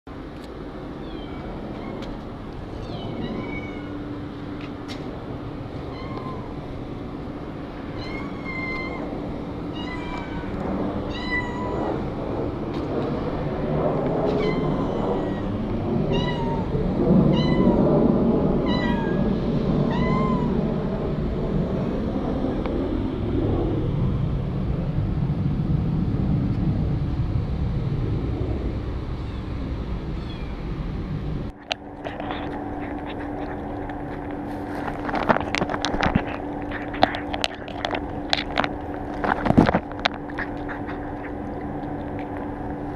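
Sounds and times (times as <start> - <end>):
background rumble: 0.6 - 42.9
cats meowing: 1.0 - 4.0, 5.8 - 6.8, 7.9 - 12.1, 14.3 - 17.8, 18.6 - 19.3, 19.9 - 20.6, 29.2 - 30.6, 32.0 - 42.8.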